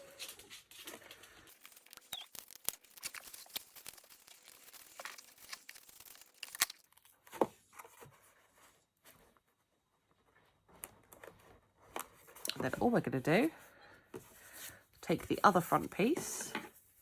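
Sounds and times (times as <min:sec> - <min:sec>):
paper rustling and crinkling: 0:00.0 - 0:12.4.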